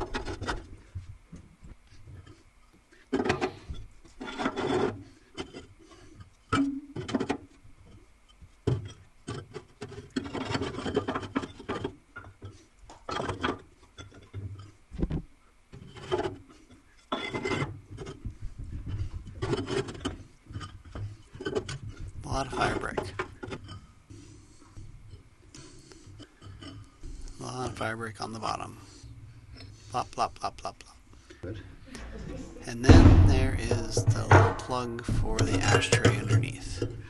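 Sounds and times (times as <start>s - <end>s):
bricks scraping: 3.1s - 6.2s, 8.8s - 14.7s, 15.8s - 24.7s
bricks knocking: 32.8s - 37.0s.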